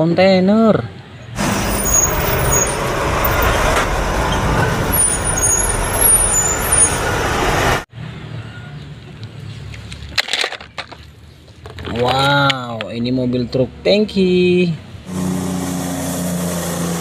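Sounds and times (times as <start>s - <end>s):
heavy truck rumbling with hiss: 1.4s - 7.8s, 15.1s - 17.0s.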